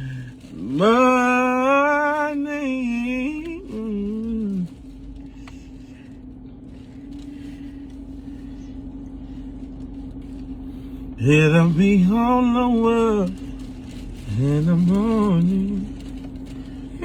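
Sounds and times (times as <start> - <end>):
man singing: 0.0 - 4.7, 11.2 - 13.4, 14.3 - 16.0
faint steady hum: 0.0 - 17.0.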